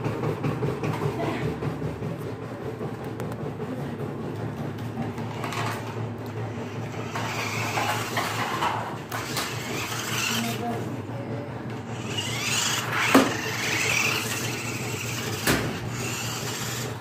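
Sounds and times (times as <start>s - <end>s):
toy car motor whirring: 5.3s - 10.9s, 11.8s - 17.0s.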